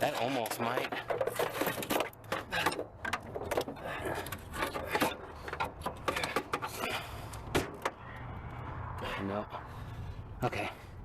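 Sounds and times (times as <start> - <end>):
metal parts scraping and creaking: 0.0 - 8.2.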